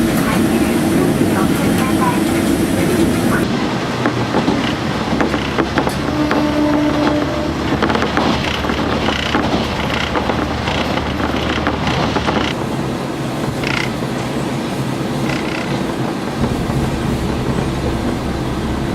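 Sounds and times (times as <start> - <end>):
low diesel hum: 4.4 - 18.9.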